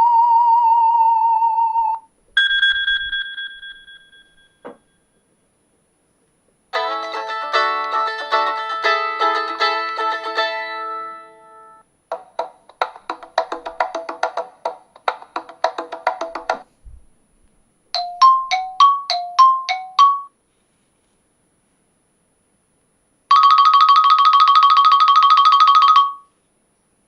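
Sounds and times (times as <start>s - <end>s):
ringtone melody: 6.8s - 16.6s, 18.0s - 20.3s, 23.3s - 26.2s
short dry percussive notes: 12.1s - 16.7s.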